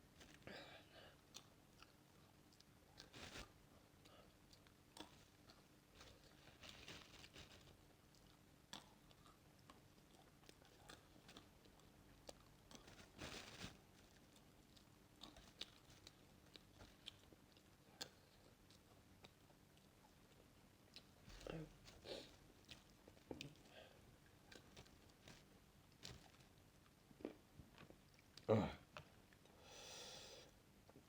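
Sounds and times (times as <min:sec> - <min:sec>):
faint low hum: 0:00.0 - 0:31.0
faint clicks and rustles: 0:01.3 - 0:27.0.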